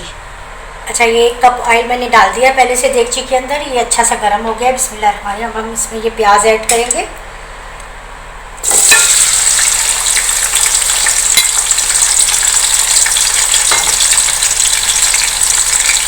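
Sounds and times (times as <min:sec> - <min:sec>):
onions sizzling in hot oil: 0:08.6 - 0:16.0
stirring clinks: 0:08.6 - 0:16.0.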